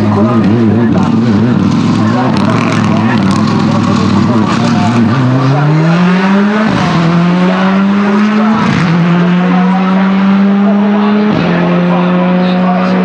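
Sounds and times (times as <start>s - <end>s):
rally car engine accelerating: 0.0s - 13.0s.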